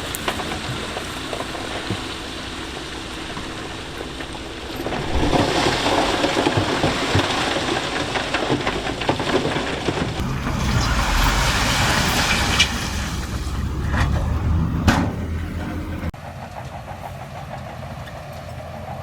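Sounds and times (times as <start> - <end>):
rocks tumbling and rattling: 0.0 - 14.8
diesel engine running: 0.0 - 19.0.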